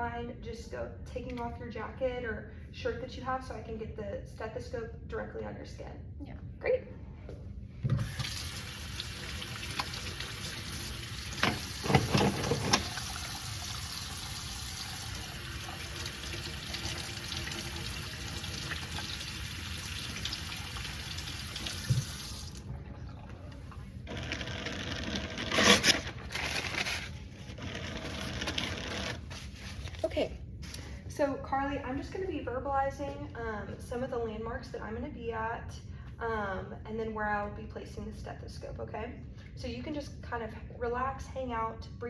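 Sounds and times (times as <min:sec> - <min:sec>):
tap water running: 0:07.9 - 0:25.5.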